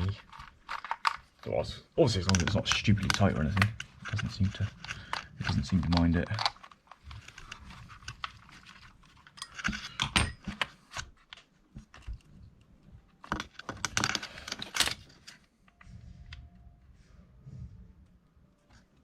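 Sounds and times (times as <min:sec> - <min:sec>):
small metal parts rattling: 0:00.0 - 0:12.1, 0:13.1 - 0:15.4.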